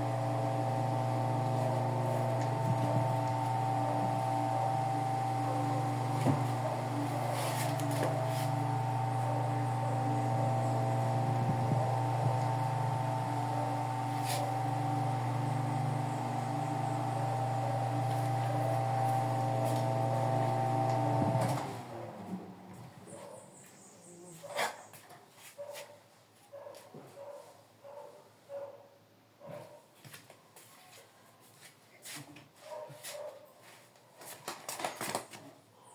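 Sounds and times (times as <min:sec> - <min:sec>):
electric fan motor hum: 0:00.0 - 0:23.0.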